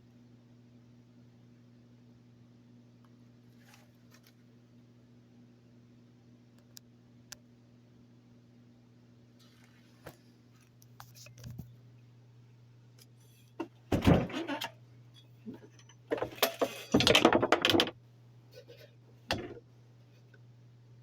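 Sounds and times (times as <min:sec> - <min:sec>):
faint steady hum: 0:00.0 - 0:21.0
rattling and knocking: 0:13.6 - 0:14.7, 0:15.5 - 0:18.0, 0:19.3 - 0:19.6.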